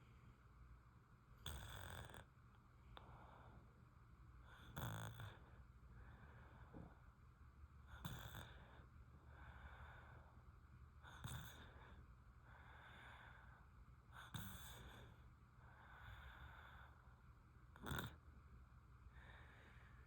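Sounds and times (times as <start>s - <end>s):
baby snoring: 1.4s - 2.2s, 4.7s - 5.4s, 17.8s - 18.2s
soft breath: 2.8s - 7.2s, 8.4s - 17.2s, 19.0s - 20.0s.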